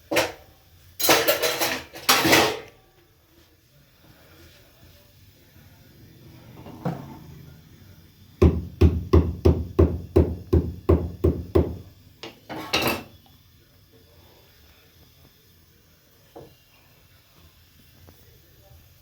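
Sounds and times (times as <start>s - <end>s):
heavy knocks on hard surface: 8.4s - 11.8s.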